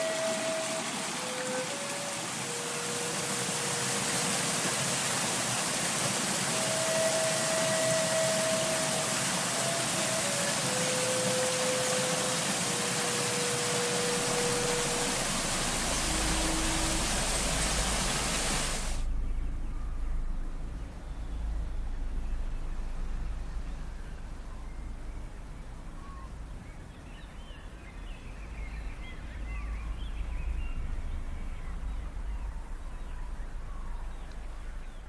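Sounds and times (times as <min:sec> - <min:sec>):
waterfall rushing: 0:00.0 - 0:19.1
low rumble: 0:14.0 - 0:35.0.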